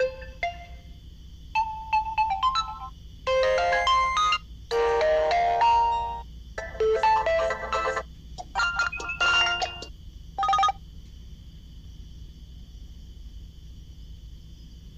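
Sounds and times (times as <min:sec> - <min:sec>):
ringtone melodies from phone speaker: 0:00.0 - 0:00.8, 0:01.6 - 0:10.8
faint high-pitched whine: 0:00.0 - 0:14.9.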